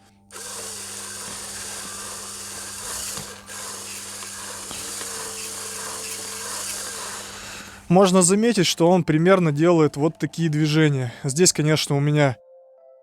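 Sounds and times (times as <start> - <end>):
mechanical rattle of piston model: 0.3 - 7.8.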